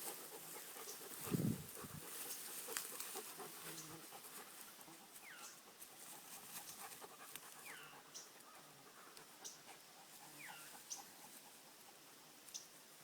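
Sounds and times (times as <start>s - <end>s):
rustling fern fronds: 0.0s - 7.4s
dog panting: 0.0s - 12.1s.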